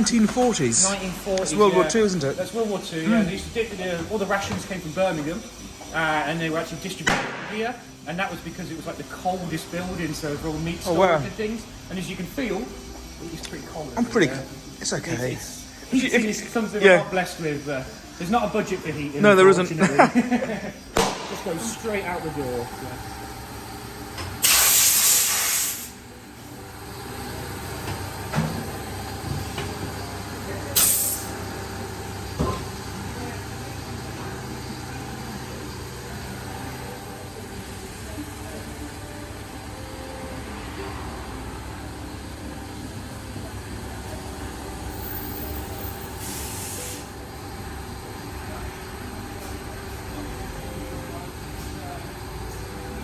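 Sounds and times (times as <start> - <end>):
low workshop rumble: 0.0 - 53.0
compressed air hissing blasts: 20.7 - 26.2, 30.7 - 32.2, 46.1 - 47.2.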